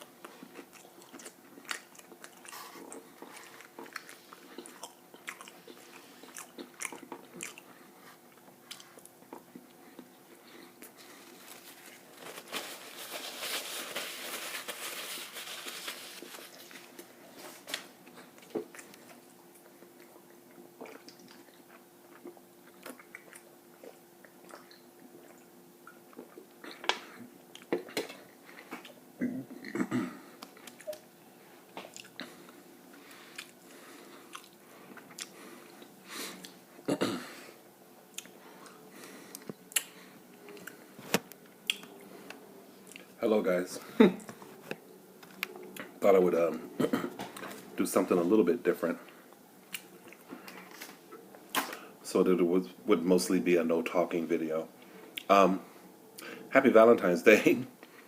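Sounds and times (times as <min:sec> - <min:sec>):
biting and chewing: 0:00.2 - 0:10.1.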